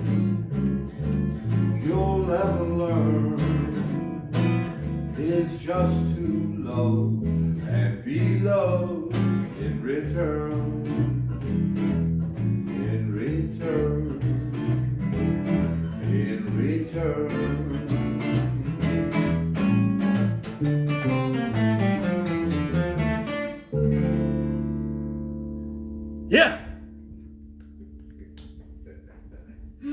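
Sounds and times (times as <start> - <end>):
acoustic guitar playing: 0.0 - 29.1.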